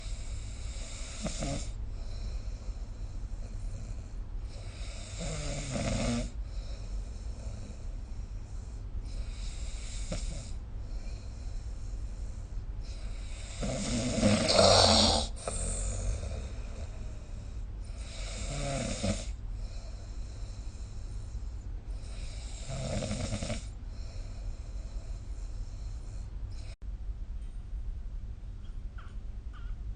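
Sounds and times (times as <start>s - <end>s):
steady low hum: 0.0s - 29.9s
person snoring: 0.6s - 1.8s, 12.9s - 19.4s, 22.0s - 23.8s.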